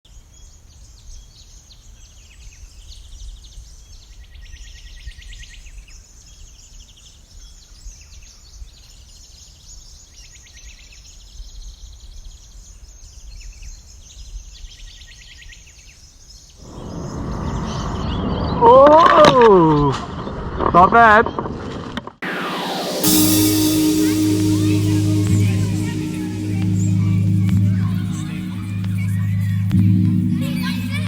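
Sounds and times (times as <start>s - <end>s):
loud noise: 22.2s - 31.0s
steady low rumble: 22.2s - 31.0s.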